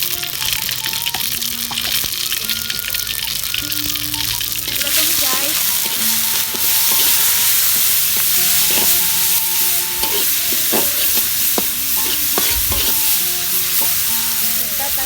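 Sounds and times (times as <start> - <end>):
food sizzling in hot oil: 0.0 - 15.0
spatula scraping and tapping pan: 4.6 - 15.0.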